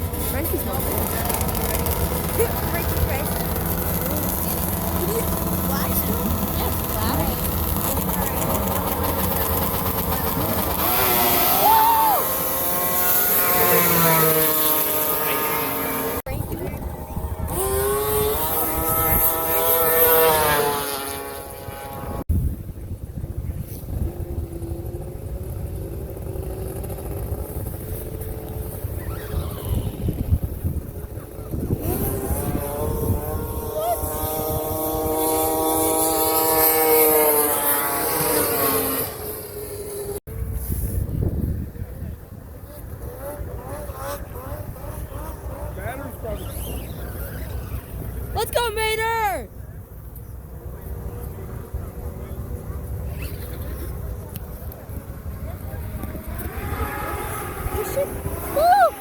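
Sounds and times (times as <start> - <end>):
snowmobile engine whine: 0.0 - 59.0
snowmobile engines droning: 0.0 - 59.0.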